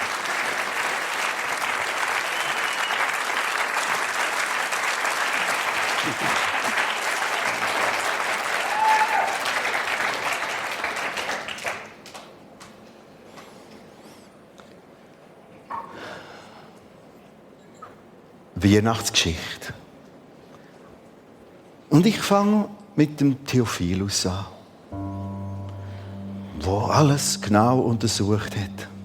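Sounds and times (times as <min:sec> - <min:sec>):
congregation applauding: 0:00.0 - 0:12.4.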